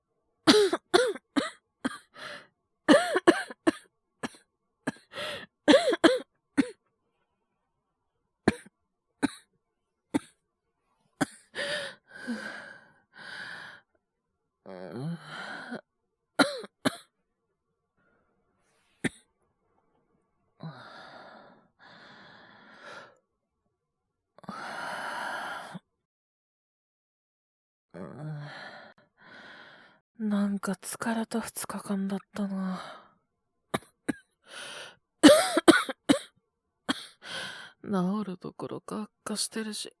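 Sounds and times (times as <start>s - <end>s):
man coughing: 0.5s - 2.0s, 2.9s - 3.7s, 5.7s - 6.7s, 16.4s - 17.0s, 35.2s - 36.3s
heavy breathing: 5.1s - 5.5s, 11.5s - 13.8s.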